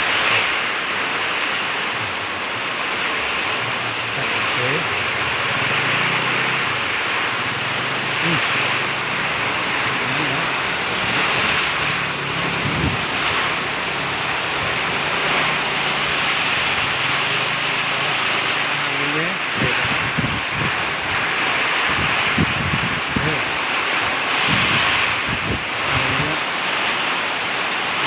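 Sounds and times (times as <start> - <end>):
heavy rain in strong wind: 0.0 - 28.0.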